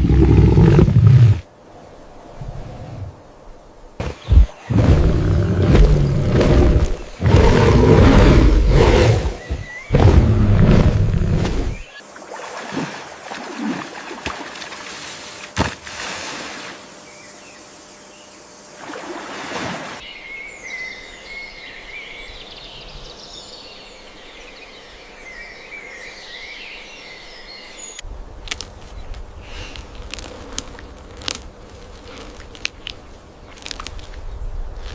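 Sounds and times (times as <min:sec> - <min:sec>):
outdoor ambience: 0:00.0 - 0:34.9
birds chirping: 0:03.9 - 0:12.4.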